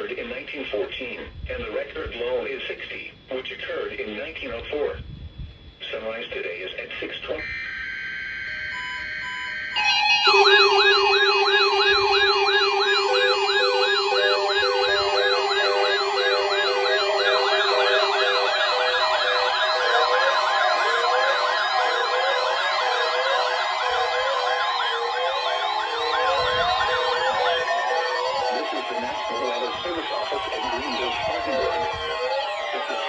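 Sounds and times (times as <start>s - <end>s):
steady low tone: 7.4s - 20.5s
electronic warbling sirens: 7.4s - 33.0s
repeating beep: 7.4s - 33.0s.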